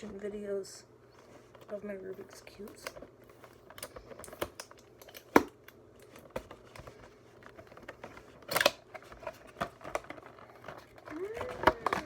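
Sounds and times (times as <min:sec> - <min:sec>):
packaging crinkling: 0:03.3 - 0:12.0
packaging clicks and taps: 0:03.6 - 0:12.0.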